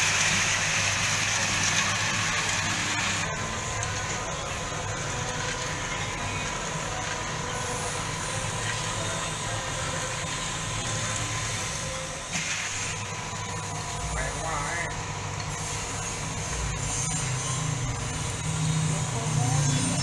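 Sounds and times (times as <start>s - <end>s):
roasting machine hiss and rumble: 0.0s - 20.0s
thin constant whine: 0.0s - 20.0s.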